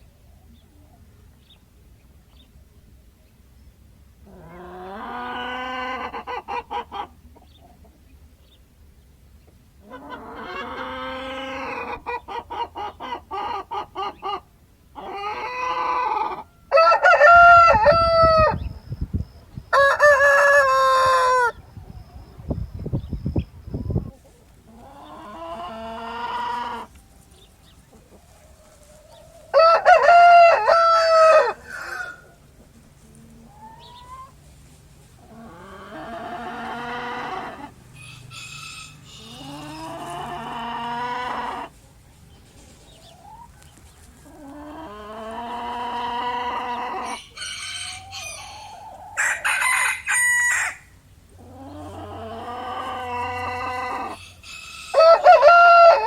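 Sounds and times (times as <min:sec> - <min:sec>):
roosters crowing: 0:04.3 - 0:07.0, 0:09.8 - 0:14.4, 0:15.0 - 0:18.7, 0:19.7 - 0:21.6, 0:24.9 - 0:27.0, 0:28.3 - 0:32.6, 0:35.2 - 0:41.8, 0:44.2 - 0:56.0.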